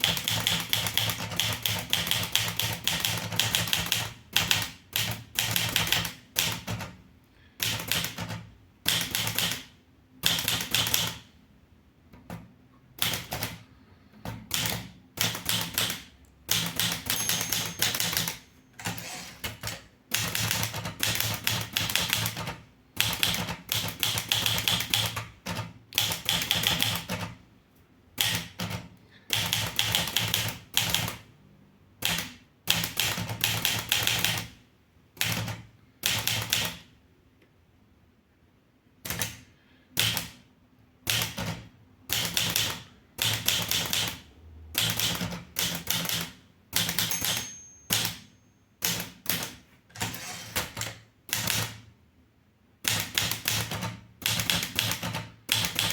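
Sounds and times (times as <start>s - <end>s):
typewriter key strikes: 14.5s - 27.3s, 44.8s - 51.8s.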